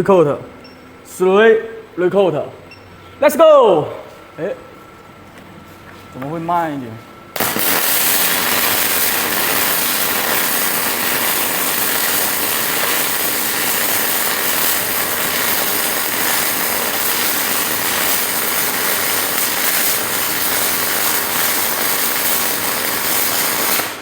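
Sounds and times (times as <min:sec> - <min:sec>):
welding arc crackling hiss: 0:07.3 - 0:24.0.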